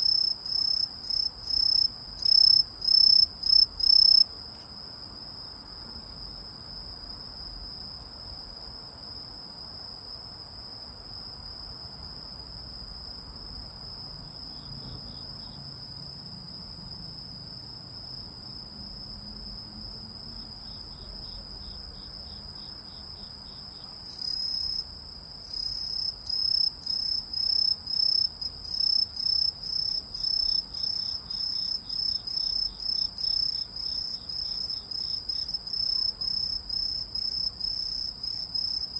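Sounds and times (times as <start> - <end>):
insect trilling and chirping: 0.0 - 4.3.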